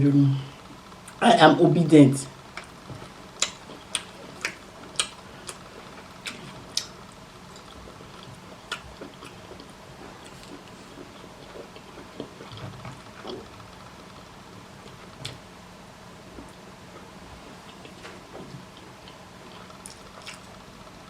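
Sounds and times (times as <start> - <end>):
faint steady hum: 0.0 - 21.0
chewing: 2.5 - 13.8, 17.5 - 20.6.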